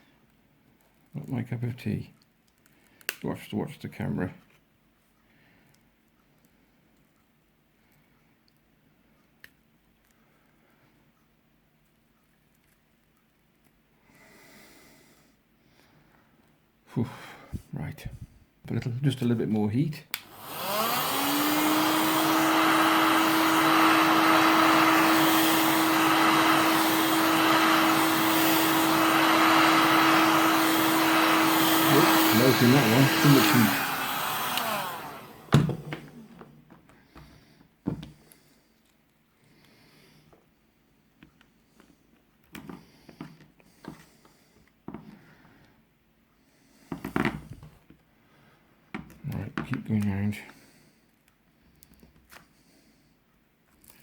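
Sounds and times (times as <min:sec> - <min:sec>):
heat gun fan blowing air: 0:20.1 - 0:36.5.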